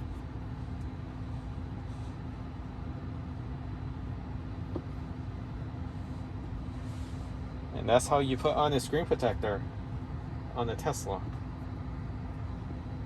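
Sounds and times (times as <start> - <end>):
car cabin rumble: 0.0 - 9.6
faint hum: 0.0 - 13.0.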